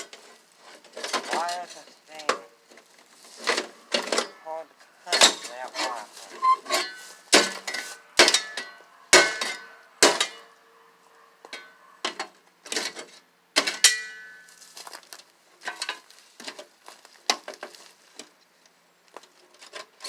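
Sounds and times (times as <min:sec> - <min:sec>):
metal clanking and rattling: 0:00.0 - 0:02.5, 0:03.3 - 0:04.4, 0:05.1 - 0:10.4.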